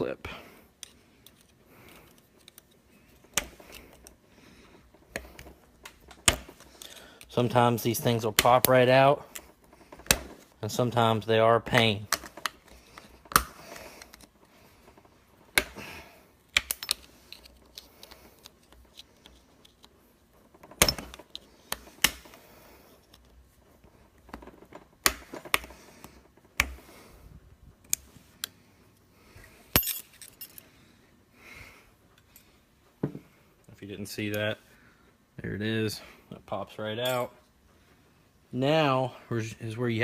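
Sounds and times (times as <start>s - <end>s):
metal clicks taps and scrapes: 0.8s - 4.2s, 16.5s - 20.0s.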